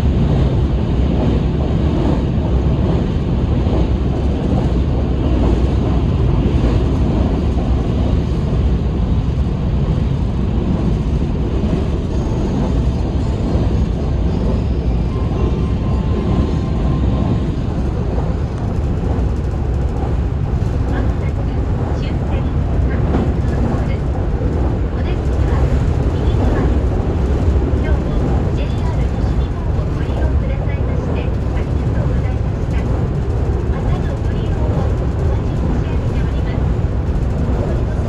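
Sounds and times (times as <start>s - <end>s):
train rumbling on tracks: 0.0s - 38.0s.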